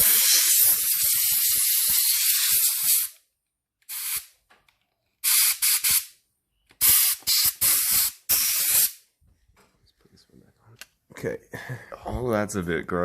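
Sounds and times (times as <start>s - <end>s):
compressed air blasting: 0.0s - 3.2s, 3.9s - 4.3s, 5.2s - 6.1s, 6.8s - 9.0s.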